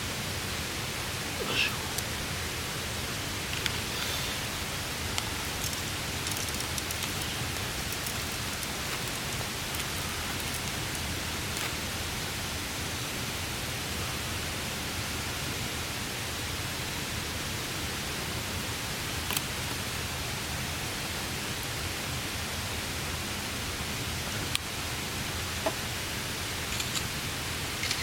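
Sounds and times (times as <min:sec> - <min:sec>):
rain falling on a tarp: 0:00.1 - 0:14.2, 0:14.8 - 0:28.0.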